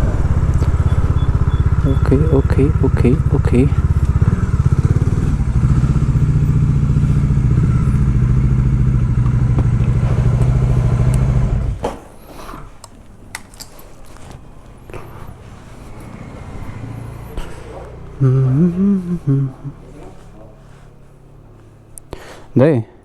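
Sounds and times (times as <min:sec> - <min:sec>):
motorcycle engine idling: 0:00.0 - 0:11.8, 0:14.4 - 0:22.0
light clicks and clatter: 0:12.7 - 0:18.0.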